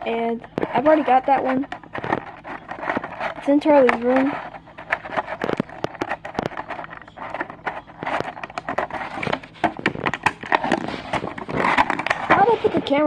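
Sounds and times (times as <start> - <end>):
plastic clicks and rustles: 0.4 - 13.0.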